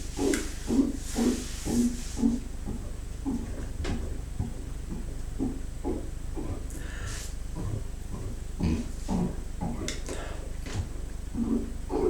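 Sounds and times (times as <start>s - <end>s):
breathy hiss of air: 6.7s - 7.4s.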